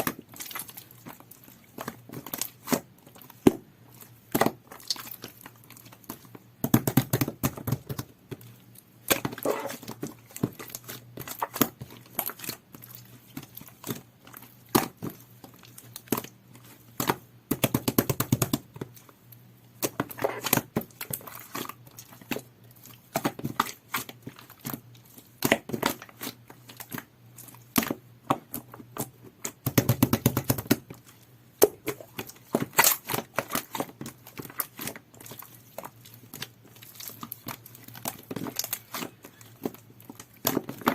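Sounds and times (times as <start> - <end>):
slime squeezed by hand: 9.4 - 9.8.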